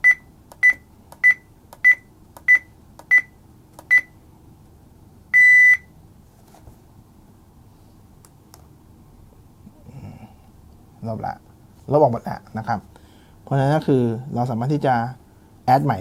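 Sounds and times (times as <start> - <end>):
alarm panel beeping: 0.0 - 4.1, 5.4 - 5.9
longer beep: 5.4 - 5.9.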